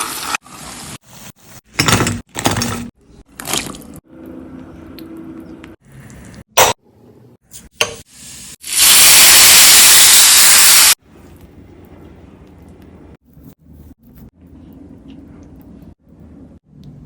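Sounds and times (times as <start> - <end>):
hot oil sizzling in a pan: 8.1 - 11.0.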